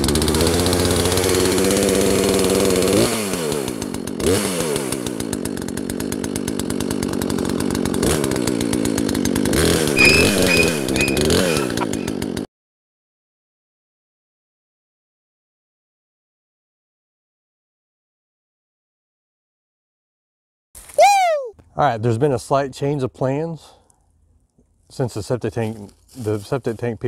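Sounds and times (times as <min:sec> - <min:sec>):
chainsaw revving: 0:00.0 - 0:12.5.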